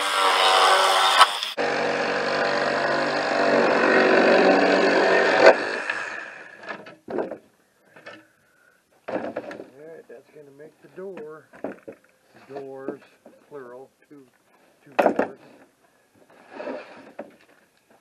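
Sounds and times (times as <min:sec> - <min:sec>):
electric saw cutting: 0:00.0 - 0:06.7.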